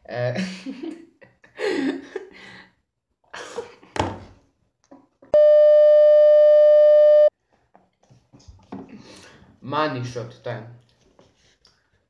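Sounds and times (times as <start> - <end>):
steady electronic bleep: 5.4 - 7.3.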